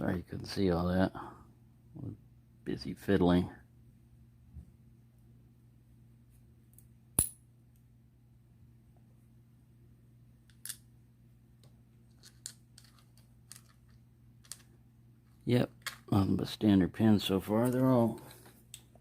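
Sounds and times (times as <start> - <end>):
faint steady hum: 0.0 - 19.0
small metal parts clicking: 12.1 - 14.7.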